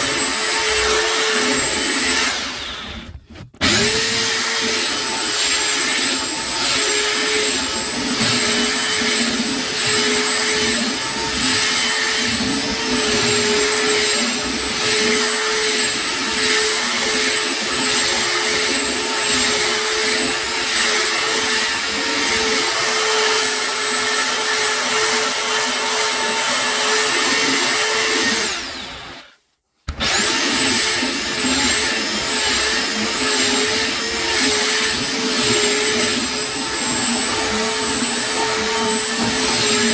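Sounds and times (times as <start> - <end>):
electric sander on wood: 0.0 - 29.3, 29.9 - 39.9.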